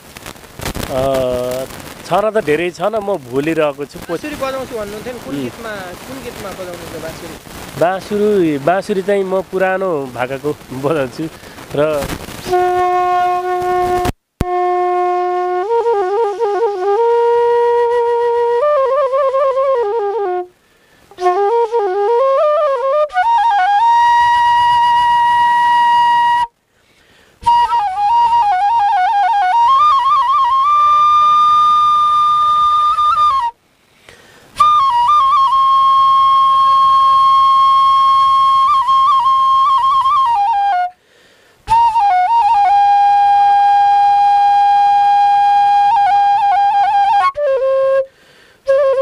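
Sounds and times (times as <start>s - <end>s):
bamboo flute playing: 11.8s - 26.6s, 27.4s - 33.6s, 34.6s - 41.0s, 41.6s - 49.0s.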